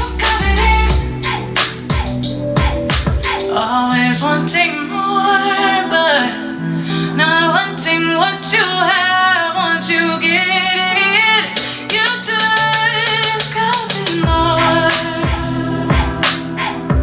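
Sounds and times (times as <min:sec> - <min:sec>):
drum hits: 0:00.0 - 0:03.5, 0:14.2 - 0:17.0
sustained bass notes: 0:00.0 - 0:03.5, 0:14.2 - 0:17.0
person singing pop song: 0:00.0 - 0:17.0.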